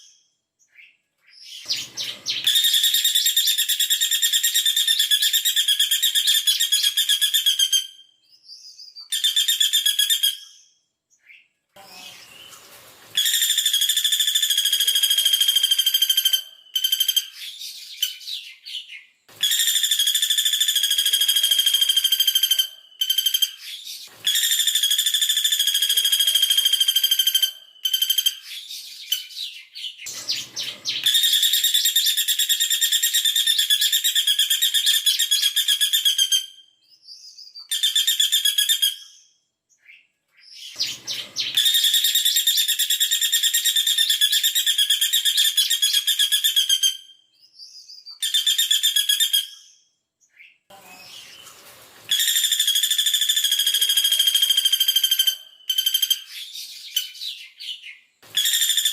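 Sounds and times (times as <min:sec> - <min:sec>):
woodpecker trilling call: 0:58.4 - 0:58.9.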